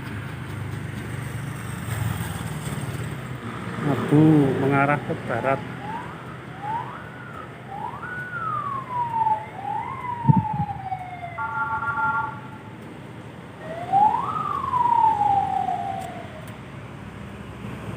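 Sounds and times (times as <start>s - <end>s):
siren sweeping: 3.9s - 12.8s, 13.5s - 16.6s.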